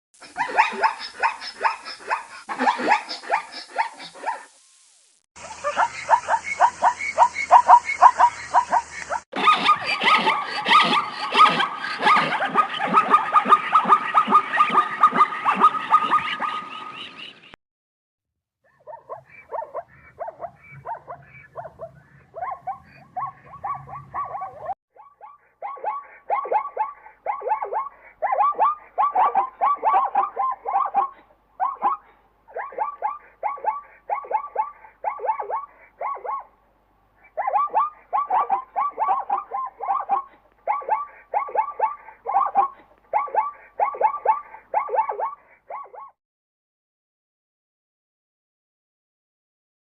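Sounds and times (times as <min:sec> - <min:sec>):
zebra barking calls: 0:00.2 - 0:04.4, 0:05.4 - 0:17.3, 0:18.9 - 0:24.8
steady hiss: 0:01.0 - 0:09.2.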